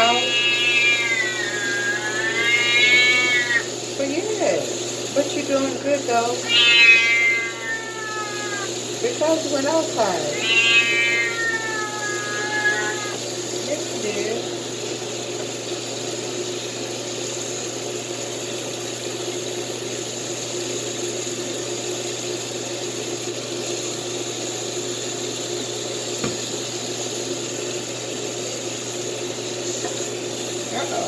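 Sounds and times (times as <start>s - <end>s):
water running from tap: 0.0s - 31.0s.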